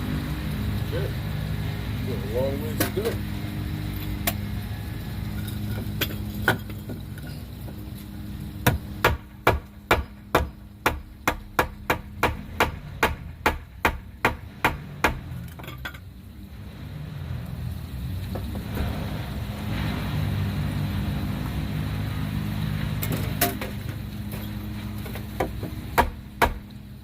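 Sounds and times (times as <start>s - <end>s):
hammer striking: 8.6s - 15.7s, 25.4s - 26.6s.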